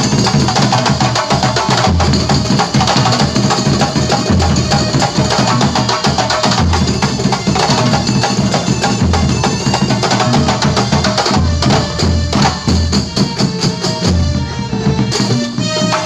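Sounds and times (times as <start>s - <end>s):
frame drums playing fast rhythm: 0.0s - 16.0s
deep low drum thumps: 10.7s - 15.5s.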